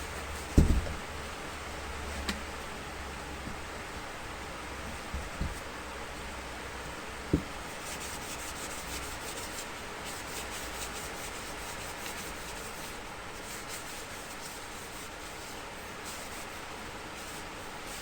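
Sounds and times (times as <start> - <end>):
sandpaper rubbing on wood: 7.8 - 18.0.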